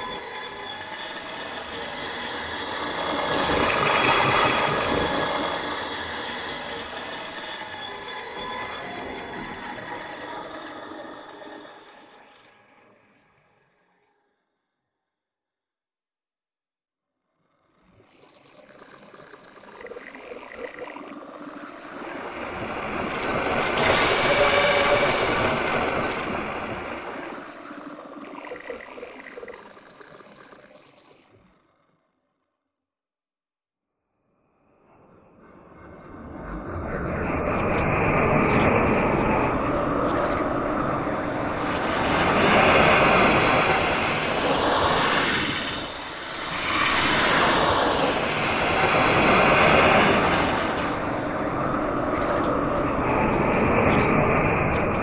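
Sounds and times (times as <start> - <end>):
glitchy fluttering whoosh: 0.0 - 8.7, 18.0 - 31.3, 39.2 - 53.6.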